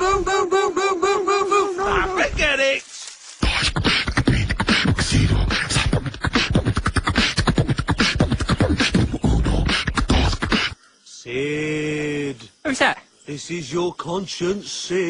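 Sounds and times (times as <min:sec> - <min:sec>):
beatboxing: 0:03.4 - 0:10.8.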